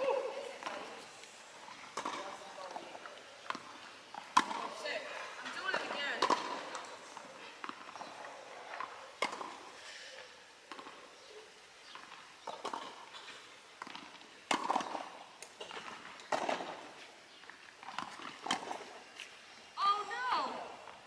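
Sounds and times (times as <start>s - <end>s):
tennis balls bouncing on court: 1.7s - 9.8s, 10.7s - 11.1s, 11.9s - 21.0s
tennis balls struck by rackets: 3.4s - 4.8s, 5.4s - 8.1s, 13.8s - 17.0s, 17.8s - 19.0s.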